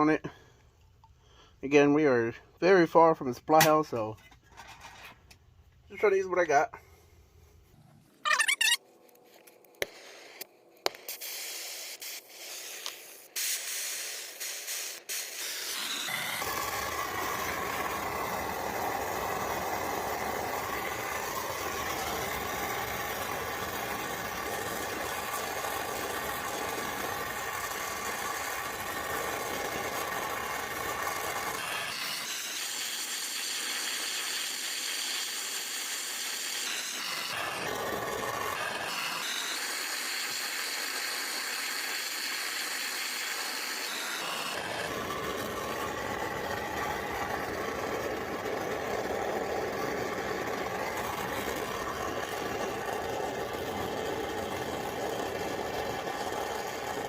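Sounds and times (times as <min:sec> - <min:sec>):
gas torch hissing: 0:09.8 - 0:57.0.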